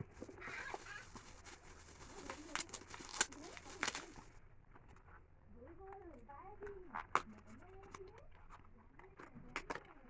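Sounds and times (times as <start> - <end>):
packaging rustling and crinkling: 0.0 - 4.4.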